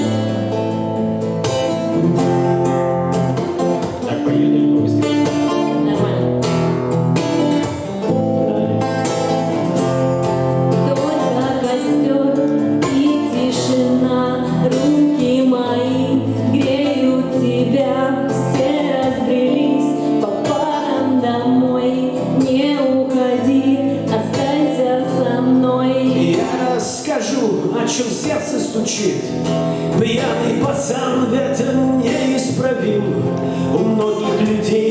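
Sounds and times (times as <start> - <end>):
song with guitar and singing: 0.0 - 34.9.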